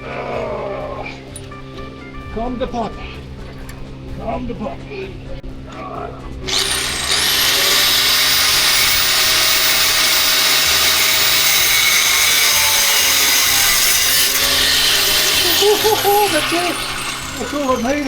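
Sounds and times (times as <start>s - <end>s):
power tool running with hiss: 6.5s - 18.0s.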